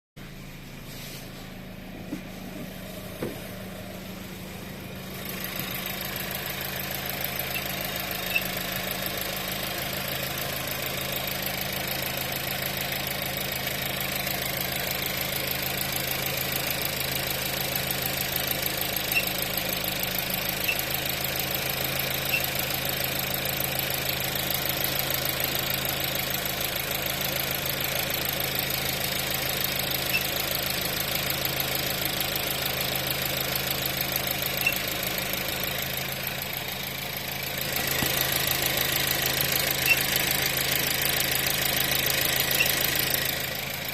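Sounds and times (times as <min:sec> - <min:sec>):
car engine idling: 0:00.2 - 0:43.9
short high squeaks: 0:07.4 - 0:08.6, 0:39.6 - 0:40.2, 0:42.4 - 0:43.2.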